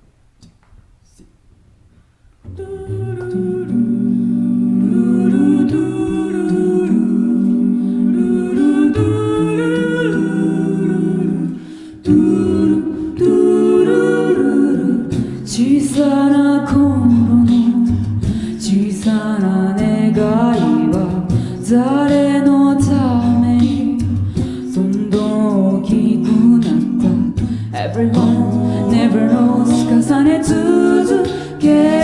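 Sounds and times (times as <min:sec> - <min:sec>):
a cappella group singing in harmony: 0:02.5 - 0:32.0
sung bass line: 0:02.5 - 0:32.0.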